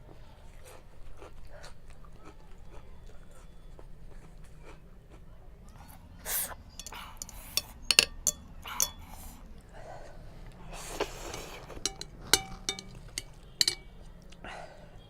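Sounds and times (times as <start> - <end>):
utensils clinking against a bowl: 6.7 - 9.3, 10.9 - 14.0.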